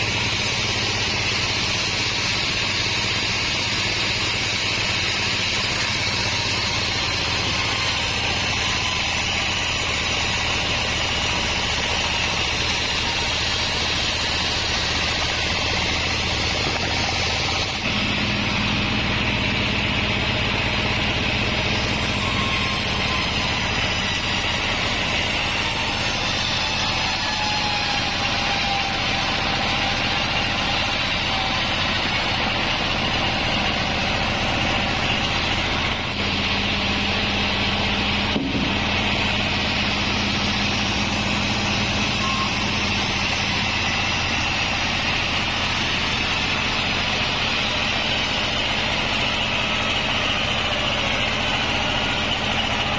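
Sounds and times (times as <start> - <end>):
band saw machine whine and hum: 0.0 - 52.9.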